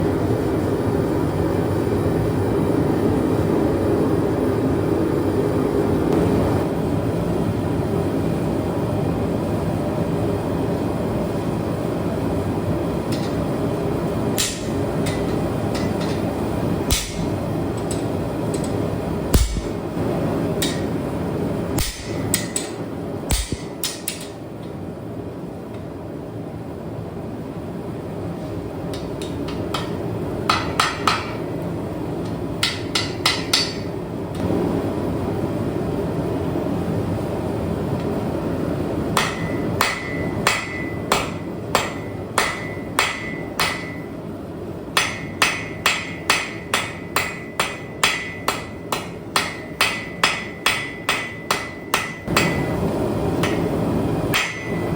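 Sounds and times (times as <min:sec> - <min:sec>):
hammer striking anvil: 0:14.4 - 0:16.2, 0:16.9 - 0:18.0, 0:19.4 - 0:19.8, 0:20.6 - 0:20.9, 0:21.8 - 0:24.4, 0:29.0 - 0:31.4, 0:32.6 - 0:33.9, 0:39.2 - 0:44.1, 0:45.0 - 0:52.8, 0:53.4 - 0:53.7, 0:54.3 - 0:54.9.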